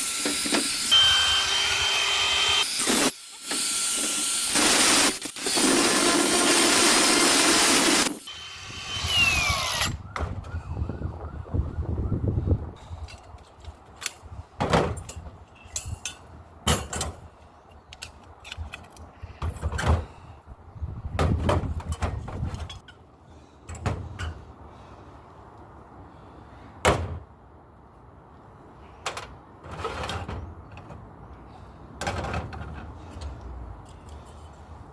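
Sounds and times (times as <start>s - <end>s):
metallic clanks and rattles of tools: 13.0s - 20.0s.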